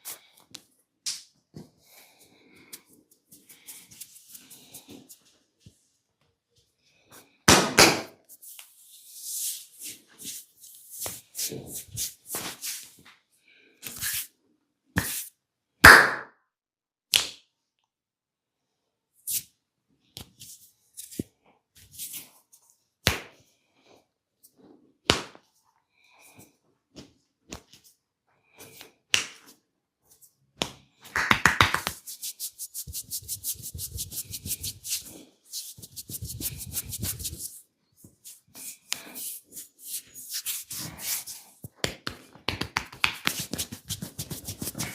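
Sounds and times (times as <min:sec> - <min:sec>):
hands slapping a body: 0:15.9 - 0:16.3, 0:23.0 - 0:23.4, 0:25.1 - 0:25.4, 0:29.1 - 0:29.5, 0:30.6 - 0:32.0, 0:41.7 - 0:44.9
rubbing and rustling: 0:31.8 - 0:41.8, 0:42.7 - 0:44.9.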